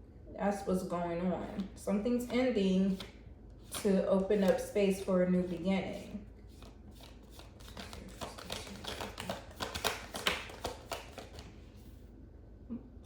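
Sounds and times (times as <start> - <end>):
cards being shuffled: 2.9 - 11.9.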